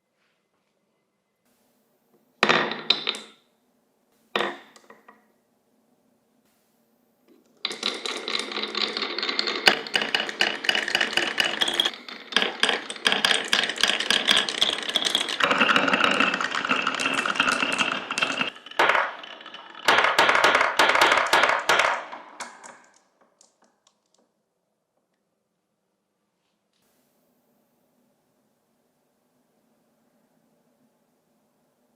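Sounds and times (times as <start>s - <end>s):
marbles rattling down wooden track: 7.6s - 24.2s.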